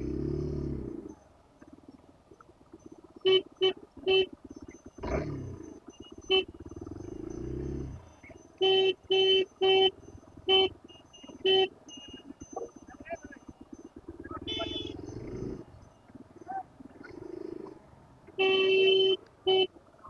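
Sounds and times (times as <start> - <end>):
motorcycle engine running: 0.0 - 1.2, 2.6 - 16.7
vehicle horn honks: 3.2 - 4.3, 8.6 - 10.8, 11.4 - 11.7, 14.4 - 15.0, 18.3 - 19.7.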